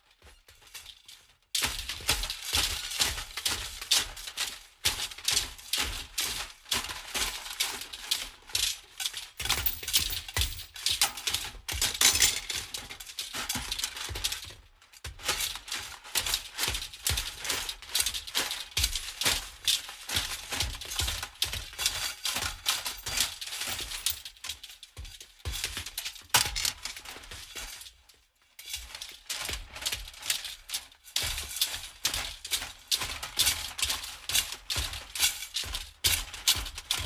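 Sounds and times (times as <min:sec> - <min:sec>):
metal pieces rattling: 0:09.4 - 0:11.3, 0:22.7 - 0:24.3.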